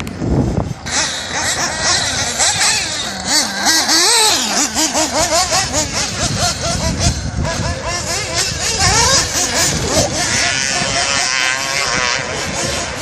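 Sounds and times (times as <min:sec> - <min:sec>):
rc car motor revving: 0:00.5 - 0:13.0.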